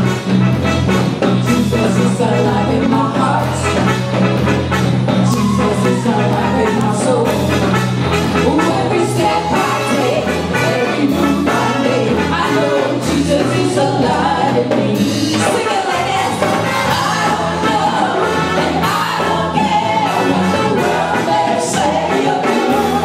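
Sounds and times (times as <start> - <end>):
bass: 0.0 - 23.0
drums: 0.0 - 23.0
gospel band playing: 0.0 - 23.0
singing: 5.2 - 7.8, 8.4 - 23.0.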